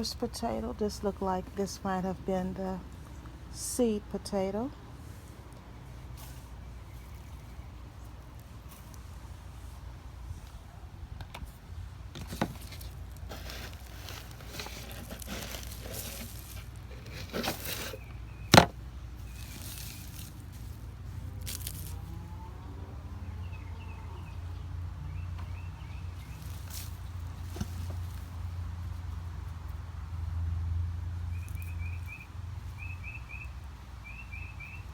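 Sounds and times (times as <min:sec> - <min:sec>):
hands sifting through soil: 0:00.0 - 0:10.7, 0:11.4 - 0:22.4, 0:25.9 - 0:29.8
steady low rumble: 0:00.0 - 0:31.1.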